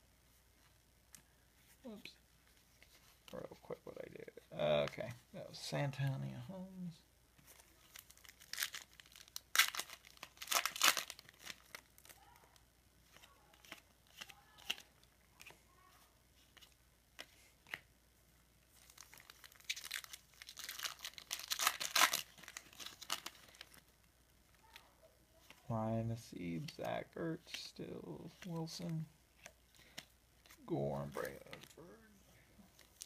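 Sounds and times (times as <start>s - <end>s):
cards rustling: 7.4s - 12.2s, 13.0s - 17.9s, 18.6s - 31.8s
wrapper tearing and crinkling: 7.8s - 12.4s, 18.8s - 23.9s, 32.7s - 33.0s.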